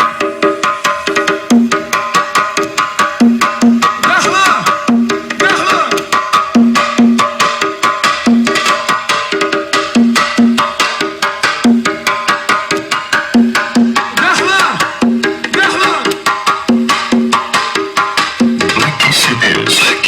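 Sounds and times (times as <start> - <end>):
loud music with fast percussive beat: 0.0 - 20.0.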